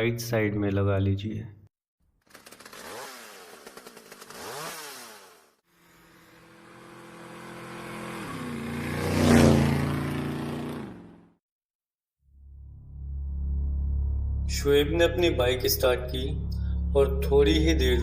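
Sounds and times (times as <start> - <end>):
motorcycle engine revving: 2.3 - 11.4
motorcycle passing by: 4.3 - 11.4.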